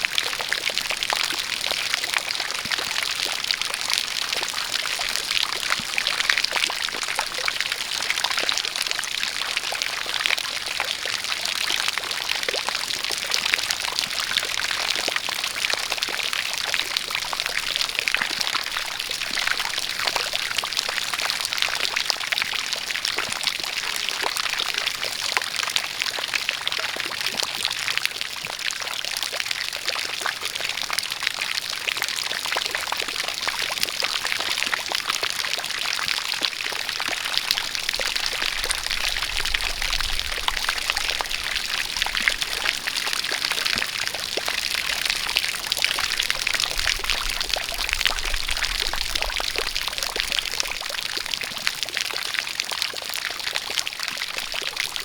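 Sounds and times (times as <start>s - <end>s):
water pouring and splashing: 31.9s - 55.0s.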